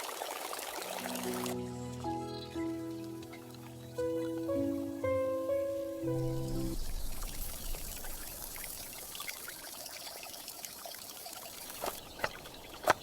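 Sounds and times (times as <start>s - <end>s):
water pouring and dripping: 0.0s - 5.2s, 6.0s - 13.0s.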